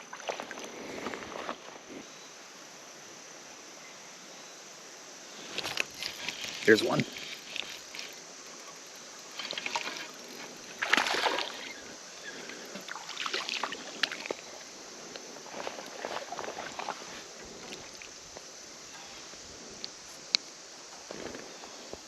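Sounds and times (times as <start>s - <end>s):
fish thrashing and splashing water: 9.3s - 11.8s, 12.8s - 14.4s.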